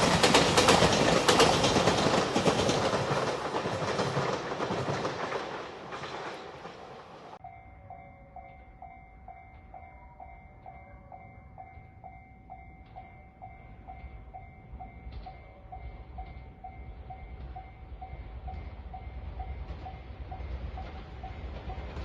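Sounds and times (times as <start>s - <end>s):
train rumble: 0.0s - 22.0s
level crossing bell clanging: 7.4s - 22.0s.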